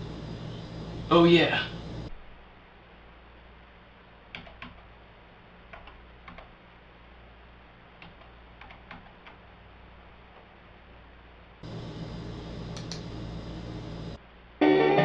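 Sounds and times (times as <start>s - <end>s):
keyboard keys clicking: 4.3s - 4.8s, 5.7s - 6.5s, 8.0s - 9.4s.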